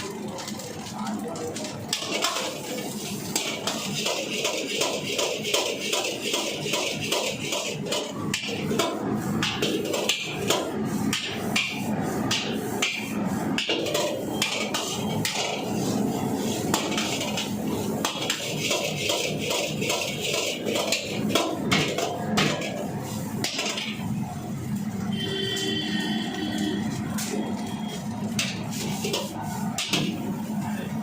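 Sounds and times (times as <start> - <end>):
metal ladle scraping a wok: 1.9 - 24.2.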